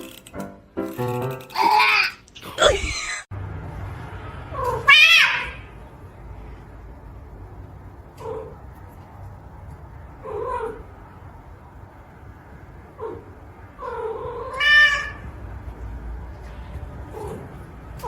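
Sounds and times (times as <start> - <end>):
cat meowing: 4.6 - 5.6, 13.8 - 15.2.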